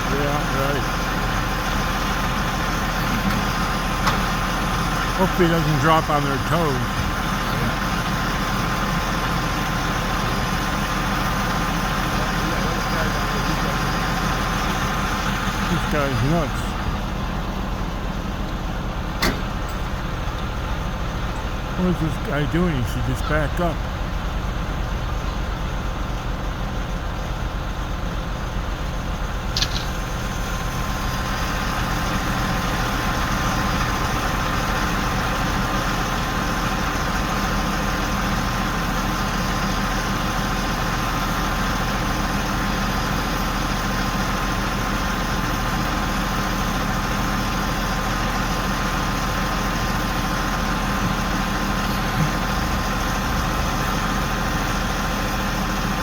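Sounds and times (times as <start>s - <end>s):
heavy crane engine running: 0.0s - 56.0s
sharp click: 29.6s - 30.0s.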